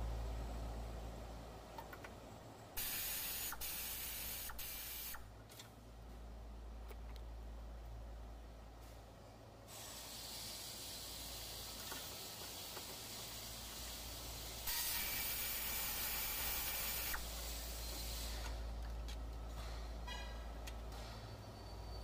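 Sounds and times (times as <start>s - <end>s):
steady hiss: 2.8s - 5.3s, 9.6s - 18.8s.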